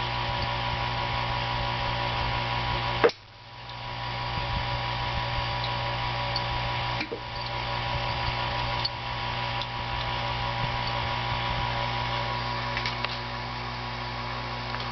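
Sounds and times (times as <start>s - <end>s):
television electrical hum: 0.0s - 14.9s.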